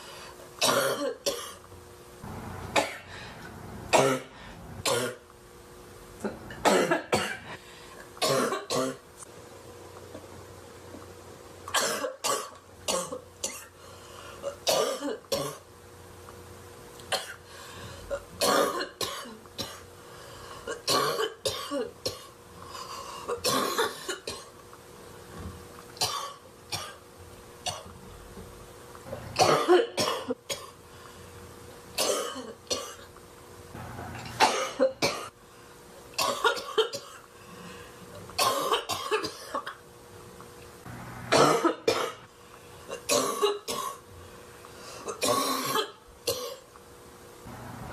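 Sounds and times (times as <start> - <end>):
woman barking cough: 0.6 - 1.6, 2.8 - 3.1, 3.9 - 4.3, 6.6 - 7.5, 8.2 - 9.0, 11.7 - 13.7, 14.5 - 15.6, 17.1 - 17.4, 18.4 - 19.8, 20.7 - 22.3, 23.3 - 24.5, 29.4 - 30.7, 32.0 - 33.0, 34.4 - 35.3, 36.2 - 37.2, 38.4 - 39.8, 41.3 - 42.2, 42.9 - 44.0, 45.0 - 46.6.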